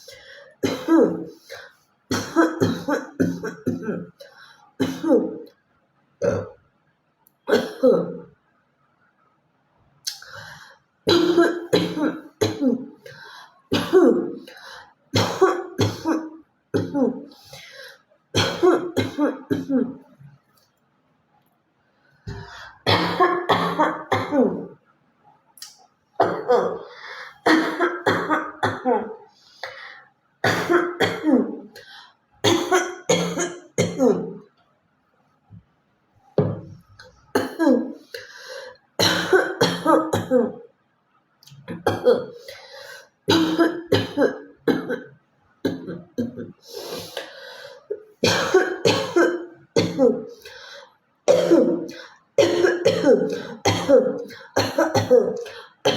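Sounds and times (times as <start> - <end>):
woman coughing: 0.6 - 1.4, 2.1 - 4.2, 4.8 - 5.4, 7.5 - 8.2, 11.1 - 12.9, 13.7 - 14.4, 15.2 - 17.3, 18.4 - 20.0, 22.3 - 24.7, 26.2 - 29.8, 30.4 - 31.7, 32.4 - 34.4, 37.4 - 38.2, 39.0 - 40.6, 41.7 - 42.6, 43.3 - 45.1, 45.7 - 46.6, 48.2 - 50.4, 51.3 - 55.9.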